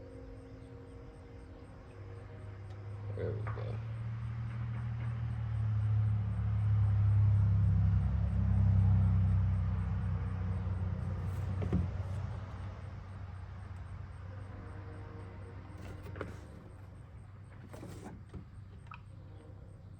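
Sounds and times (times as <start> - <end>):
vehicle engine rumbling: 0.0 - 19.9.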